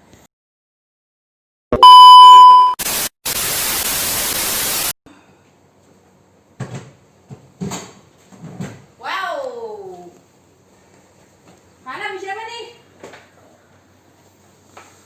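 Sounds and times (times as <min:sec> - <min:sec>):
electronic beep: 0:01.8 - 0:02.8
tv static hiss: 0:02.8 - 0:04.9.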